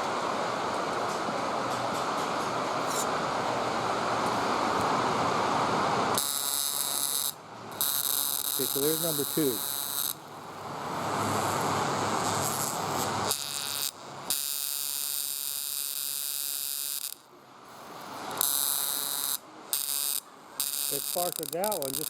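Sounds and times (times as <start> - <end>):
electric spark buzzing: 6.1 - 22.0.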